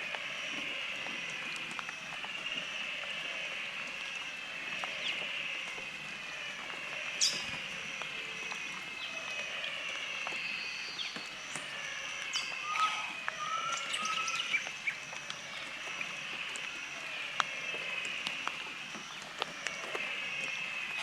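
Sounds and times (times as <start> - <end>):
high-pitched animal chorus: 0.0 - 21.0
rising bird chirps: 12.2 - 15.0.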